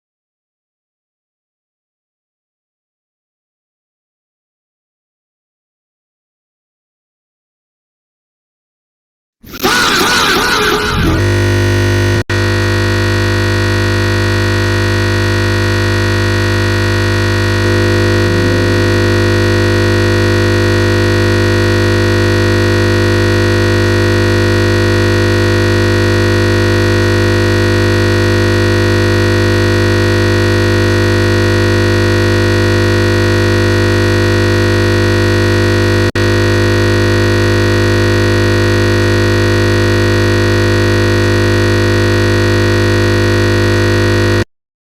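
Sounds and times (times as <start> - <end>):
looping electronic buzz: 9.4 - 44.5.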